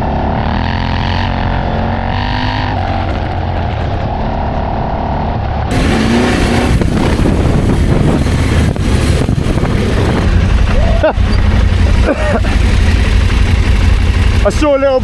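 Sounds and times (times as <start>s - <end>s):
wind rush: 5.4s - 14.5s
motorcycle engine running: 5.7s - 15.0s.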